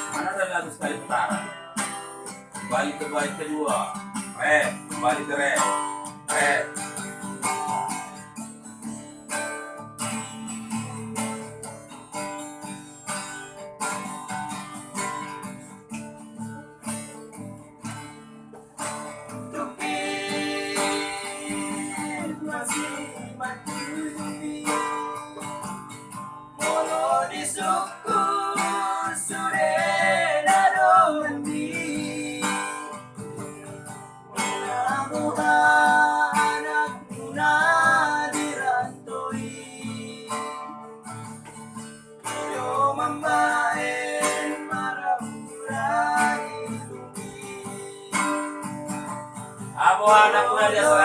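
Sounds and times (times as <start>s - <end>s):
acoustic guitar strummed and plucked: 0.0s - 51.0s
person singing with vibrato: 19.5s - 25.4s, 26.6s - 33.1s, 34.3s - 40.7s, 42.3s - 48.2s, 49.7s - 51.0s.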